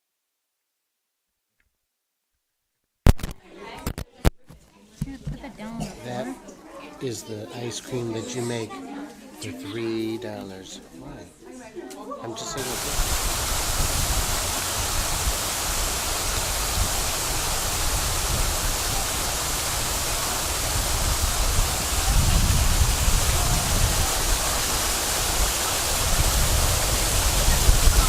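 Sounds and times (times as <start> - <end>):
steady rushing noise: 12.6 - 28.0.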